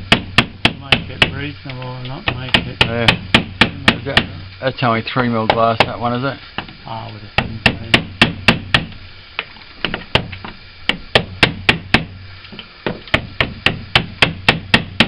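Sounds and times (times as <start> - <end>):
hammer blows on a tool: 0.0 - 4.6, 7.3 - 8.9, 12.9 - 15.0.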